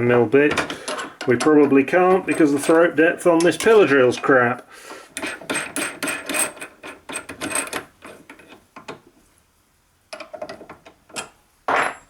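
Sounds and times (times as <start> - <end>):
metal parts clicking and scraping: 0.5 - 4.3, 5.2 - 8.6.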